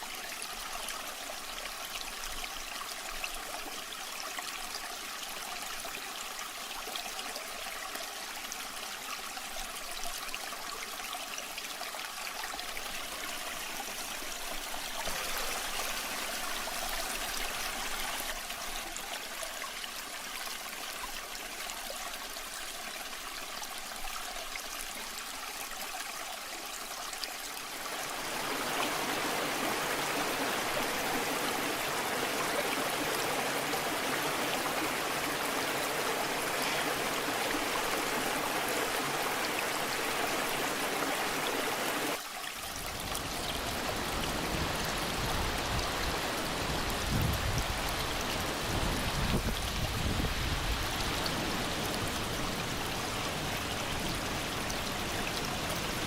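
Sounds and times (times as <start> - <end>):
waterfall rushing and splashing: 12.9 - 18.4, 27.6 - 56.0.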